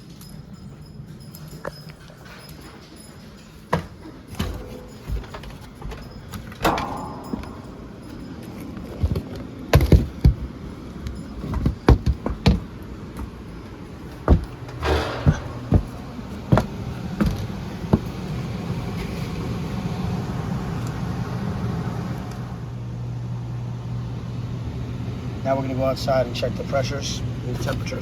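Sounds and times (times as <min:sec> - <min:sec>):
low machine hum: 0:04.1 - 0:28.0
sharp knocks and clunks: 0:06.6 - 0:10.4, 0:14.3 - 0:18.1
door sliding or scraping: 0:14.8 - 0:16.1.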